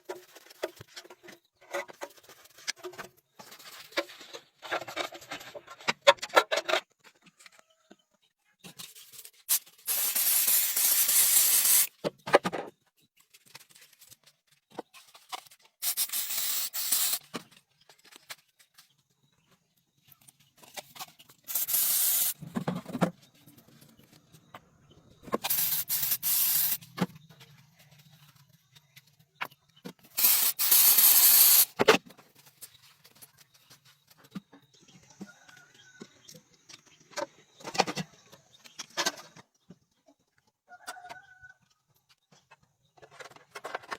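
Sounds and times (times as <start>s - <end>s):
spray nozzle hissing: 9.5s - 11.9s, 15.8s - 17.2s, 21.5s - 22.4s, 25.5s - 26.8s, 30.2s - 31.8s.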